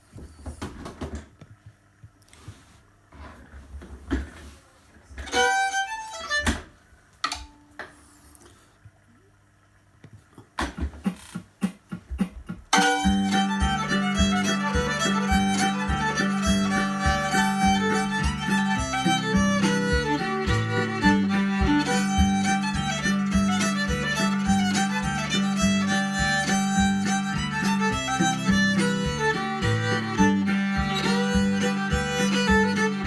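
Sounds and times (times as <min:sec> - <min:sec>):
fiddle tune: 0:05.3 - 0:06.7, 0:12.7 - 0:33.0
steady beat: 0:11.4 - 0:33.0
knocks: 0:11.9 - 0:33.0.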